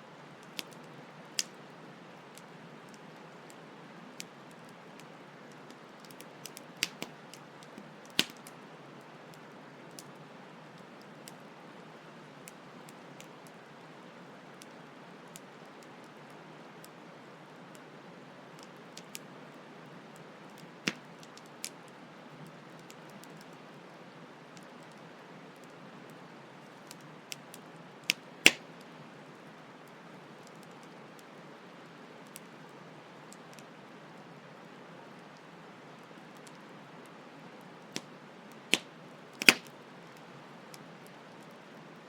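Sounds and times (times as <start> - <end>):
campfire crackling: 0.2 - 42.0
sharp loud pops of fire: 8.2 - 8.4, 28.4 - 28.6, 38.7 - 39.7.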